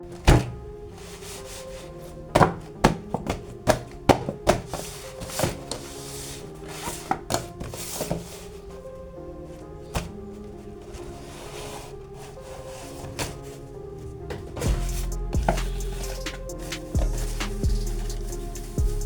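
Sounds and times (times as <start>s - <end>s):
packaging rustling: 0.0s - 14.8s
background music with held tones: 0.0s - 19.0s
plastic parts clicking and knocking: 2.3s - 5.9s.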